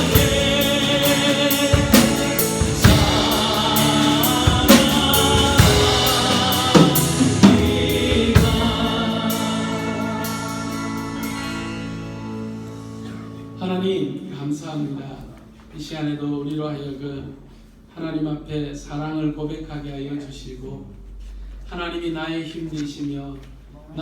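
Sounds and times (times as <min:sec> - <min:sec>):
praise band with drum kit: 0:00.0 - 0:12.7
congregation singing: 0:00.0 - 0:13.2.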